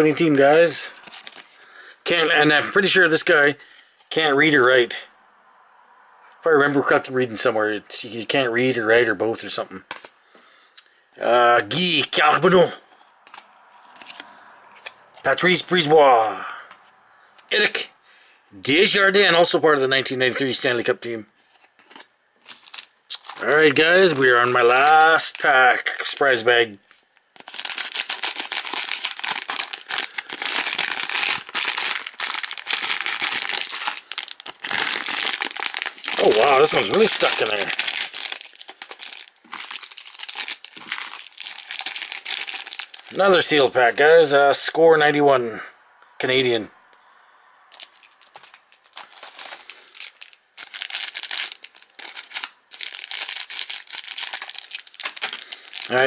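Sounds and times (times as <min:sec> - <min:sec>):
packaging tearing and crinkling: 0:00.9 - 0:01.7, 0:12.9 - 0:15.4, 0:21.4 - 0:26.2, 0:27.4 - 0:43.4, 0:47.7 - 0:56.0.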